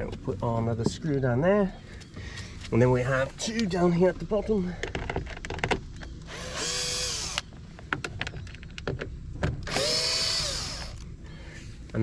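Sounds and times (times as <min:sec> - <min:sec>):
handling clicks and knocks: 0:04.7 - 0:06.2, 0:07.4 - 0:09.7
cordless drill running: 0:06.3 - 0:07.5, 0:09.6 - 0:11.0.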